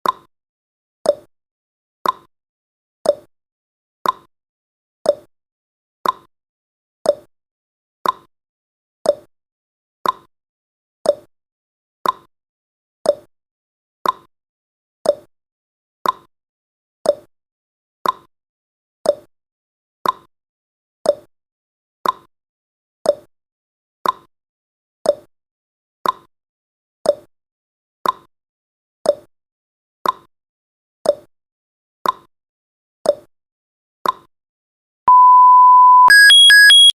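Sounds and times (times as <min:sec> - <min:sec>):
timer ticking clicks: 0:36.0 - 0:36.9.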